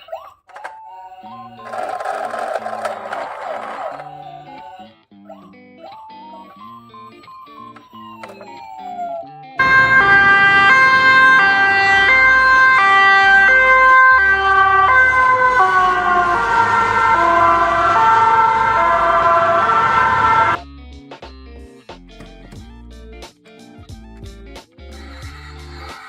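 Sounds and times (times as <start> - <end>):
two-tone ambulance siren: 0.5 - 20.6.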